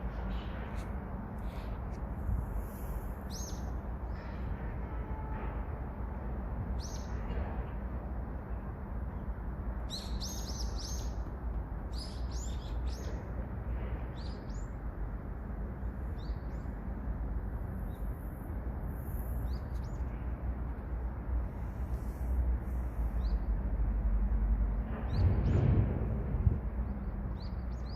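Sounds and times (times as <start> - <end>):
songbird singing: 9.9 - 11.3, 11.9 - 13.2.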